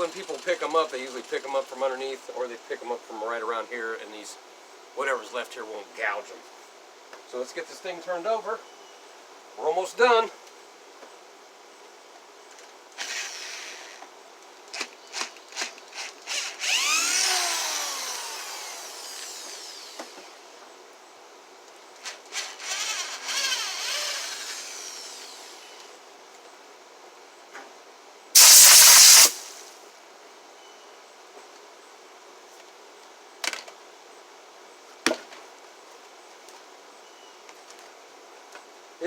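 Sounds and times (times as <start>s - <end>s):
power drill driving screws into wood: 13.0s - 14.0s, 14.8s - 20.5s, 22.0s - 25.9s, 28.4s - 29.7s.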